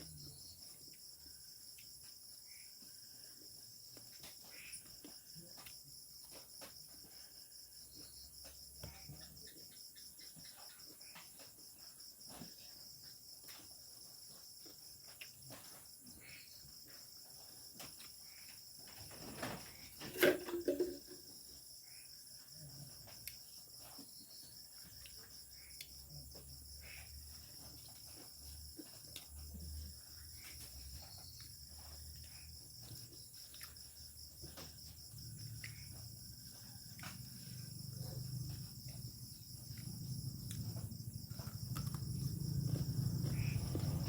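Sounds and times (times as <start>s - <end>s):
crickets chirping: 0.0s - 44.0s.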